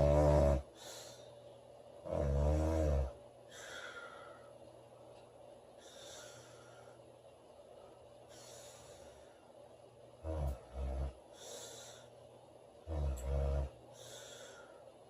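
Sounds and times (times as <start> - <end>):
woman snoring: 0.0 - 1.2, 2.0 - 3.2, 10.2 - 11.6, 12.9 - 14.2
faint breaths: 0.0 - 15.0.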